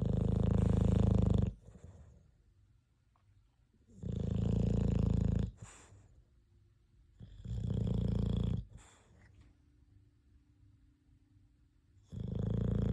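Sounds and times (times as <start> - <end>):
dog snoring: 0.0 - 2.2, 3.9 - 6.0, 7.2 - 9.2, 12.0 - 12.9.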